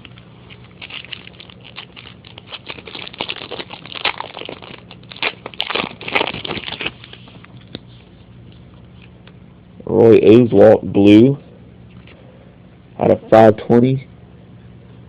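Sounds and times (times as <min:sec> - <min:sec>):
foil wrapper tearing and crinkling: 0:00.0 - 0:07.9.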